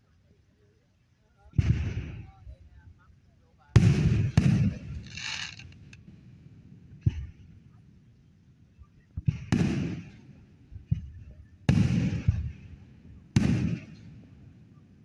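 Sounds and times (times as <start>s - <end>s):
firework booms: 1.5s - 2.8s, 3.8s - 6.3s, 9.2s - 14.6s
firework pops: 3.8s - 6.2s, 10.9s - 12.7s
firework crack: 3.8s - 7.4s, 9.2s - 14.6s.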